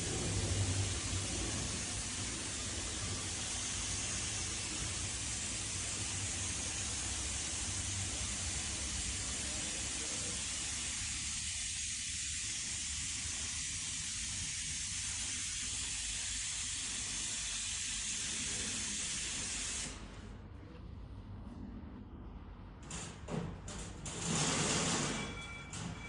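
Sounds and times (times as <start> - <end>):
grinding machine with coolant spray: 0.0 - 19.8.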